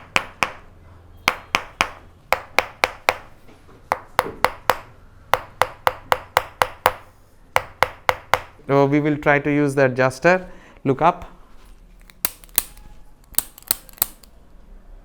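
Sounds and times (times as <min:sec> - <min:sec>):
adjusting instrument clicks: 0:12.0 - 0:14.3.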